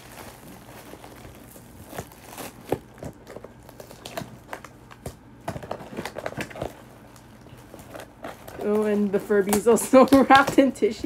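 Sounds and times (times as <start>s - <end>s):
tissue paper rustling and crinkling: 0.0s - 11.0s.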